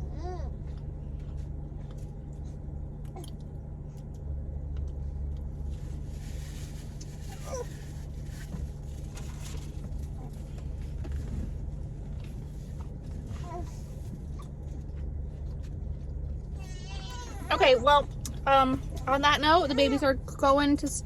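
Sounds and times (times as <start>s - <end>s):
car idling: 0.0s - 21.0s
small clicks and rustles: 0.7s - 16.6s
baby squealing: 19.5s - 20.0s.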